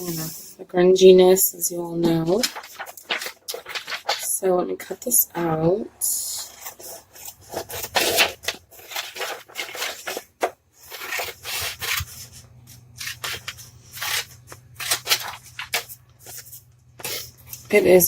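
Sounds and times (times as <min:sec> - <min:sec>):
scissors cutting paper: 0:02.1 - 0:04.3, 0:06.4 - 0:12.3, 0:13.0 - 0:17.9.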